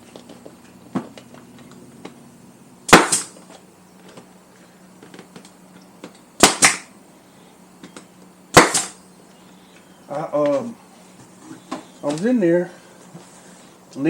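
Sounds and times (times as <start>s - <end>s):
pneumatic nail gun firing: 2.9s - 3.4s, 6.4s - 6.9s, 8.5s - 9.0s.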